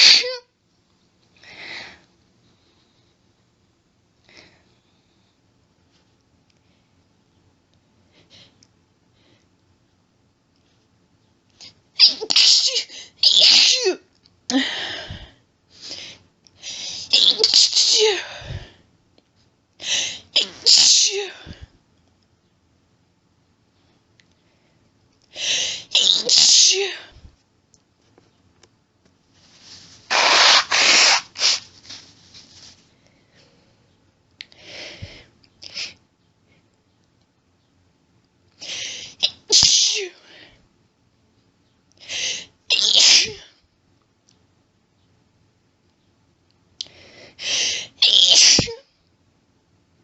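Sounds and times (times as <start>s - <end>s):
woman sneezing: 0.0s - 0.5s, 12.0s - 14.0s, 17.1s - 18.3s, 20.4s - 21.5s, 25.9s - 27.1s, 39.2s - 40.2s, 42.7s - 43.5s, 48.0s - 48.8s
woman blowing her nose: 30.1s - 31.7s.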